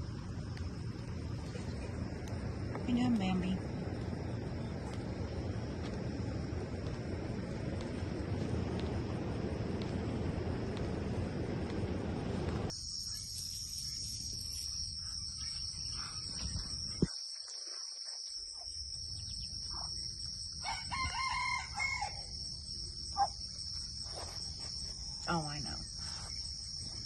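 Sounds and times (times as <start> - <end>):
wind rumble on microphone: 0.0 - 12.7
high-pitched insect drone: 12.7 - 27.0
rooster crowing: 20.6 - 22.4.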